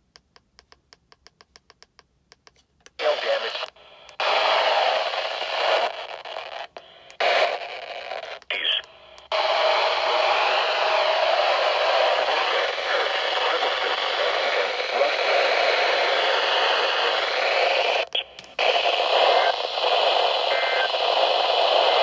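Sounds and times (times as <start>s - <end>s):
radio static hiss: 3.0s - 22.0s
faint voice: 8.5s - 8.8s.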